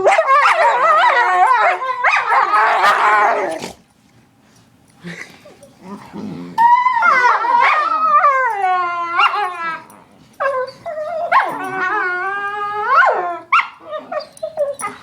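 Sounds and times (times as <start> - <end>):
dog howling calls: 6.6 - 15.0.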